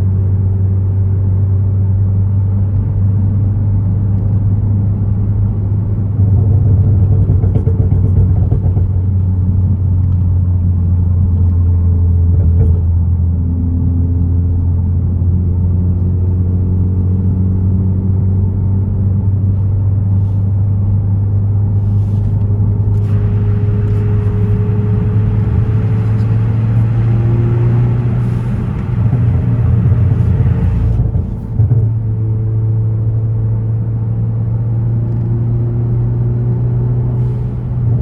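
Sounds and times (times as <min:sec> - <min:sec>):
road and wind noise: 0:00.0 - 0:38.0
car engine droning: 0:21.8 - 0:34.3, 0:35.9 - 0:38.0.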